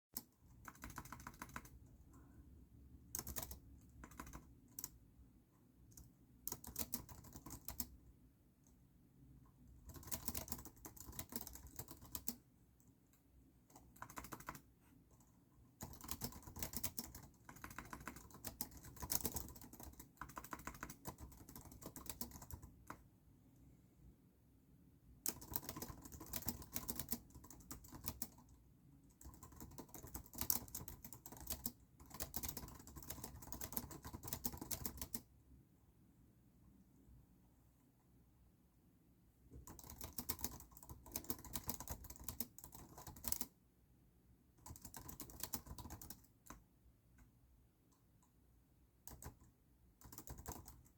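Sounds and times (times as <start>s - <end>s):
typing on computer keyboard: 0.2s - 2.2s, 3.1s - 5.0s, 5.9s - 8.0s, 9.7s - 12.5s, 13.6s - 23.0s, 25.2s - 35.3s, 39.5s - 43.6s, 44.6s - 46.6s, 49.0s - 50.9s.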